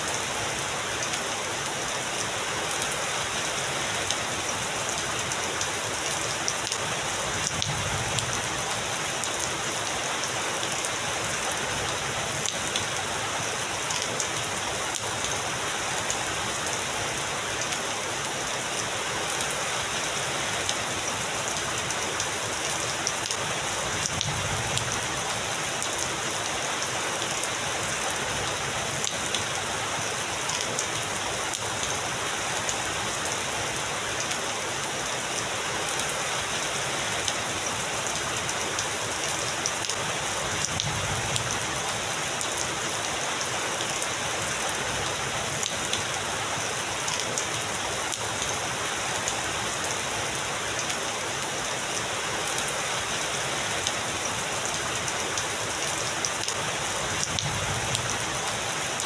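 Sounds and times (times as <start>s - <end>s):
heavy rain hiss: 0.0s - 59.0s.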